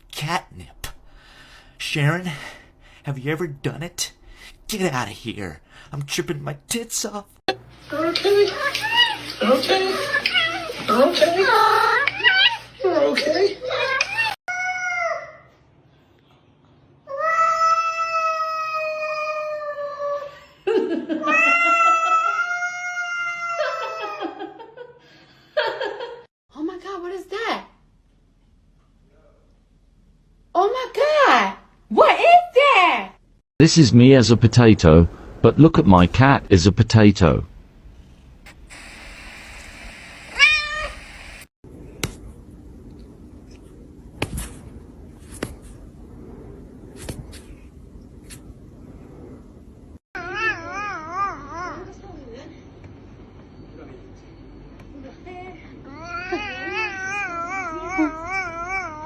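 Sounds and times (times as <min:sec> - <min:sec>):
steady hiss: 0:38.0 - 0:41.5
cat yowling: 0:40.3 - 0:41.0.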